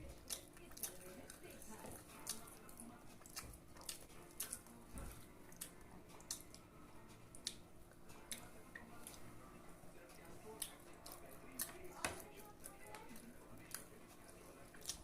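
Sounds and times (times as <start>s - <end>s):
wet chewing: 0.0s - 15.0s.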